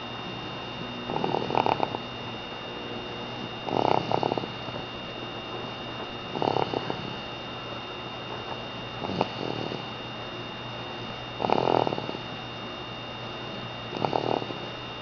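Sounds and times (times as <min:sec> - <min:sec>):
person snoring: 0:01.1 - 0:02.0, 0:03.6 - 0:04.8, 0:06.3 - 0:07.2, 0:09.0 - 0:09.8, 0:11.4 - 0:12.3, 0:13.9 - 0:14.6.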